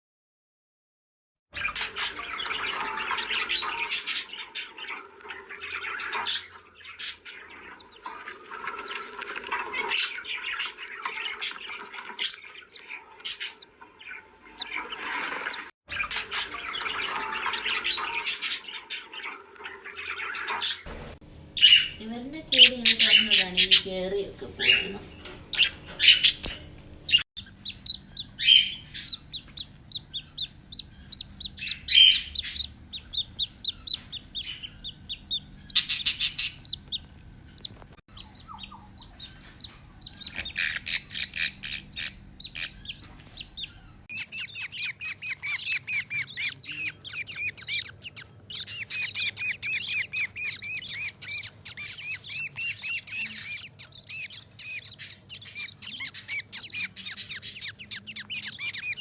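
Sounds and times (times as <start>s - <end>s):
budgerigars chattering and warbling: 1.6s - 20.9s, 21.6s - 59.0s
squawky bursts: 1.6s - 23.8s, 44.1s - 59.0s.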